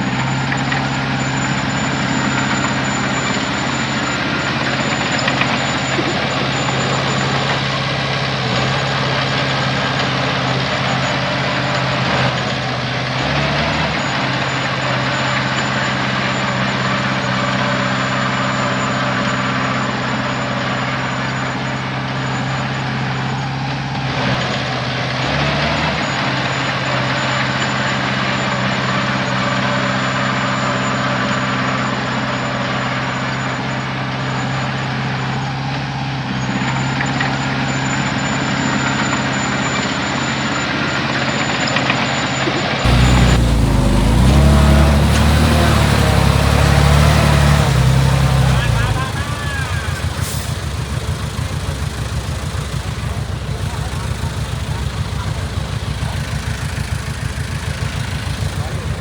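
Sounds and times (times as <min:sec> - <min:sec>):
heavy diesel engine running: 0:00.0 - 0:24.3, 0:42.9 - 0:59.0.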